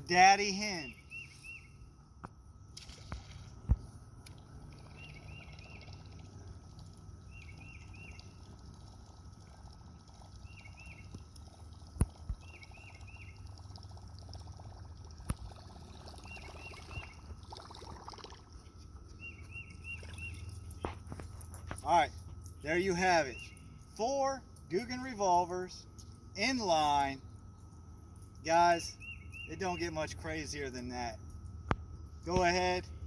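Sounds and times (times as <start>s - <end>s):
low outdoor rumble: 0.0s - 33.0s
bird calling: 4.7s - 9.2s, 15.9s - 17.9s, 21.8s - 25.8s, 28.5s - 31.2s.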